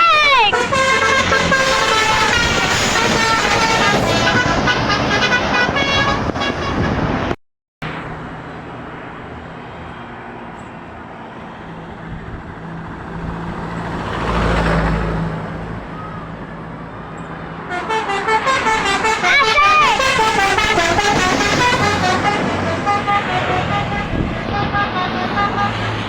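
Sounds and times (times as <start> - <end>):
road traffic engine drone: 0.0 - 26.0
musical air horn melody: 0.1 - 7.2, 17.7 - 26.0
heavy vehicle passing: 0.1 - 26.0.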